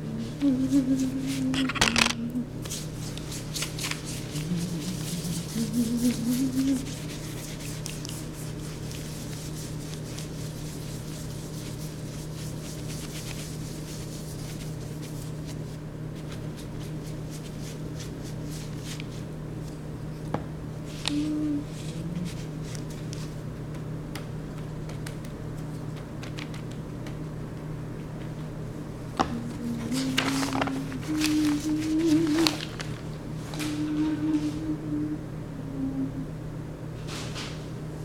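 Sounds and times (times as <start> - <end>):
short humming tones: 0.0 - 3.2, 4.1 - 7.6, 20.8 - 22.9, 28.7 - 37.1
steady electrical hum: 0.0 - 38.0
paintbrush scratching: 2.6 - 15.5.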